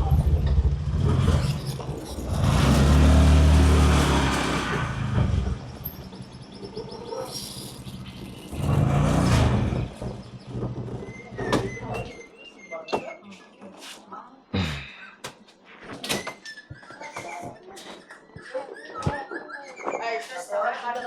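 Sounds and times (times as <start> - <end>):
vehicle engine running: 0.0 - 7.0.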